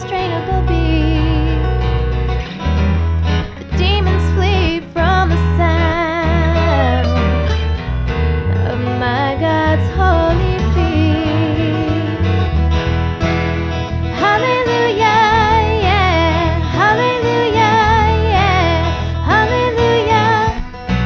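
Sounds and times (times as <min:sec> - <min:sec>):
instrumental worship music: 0:13.9 - 0:21.0.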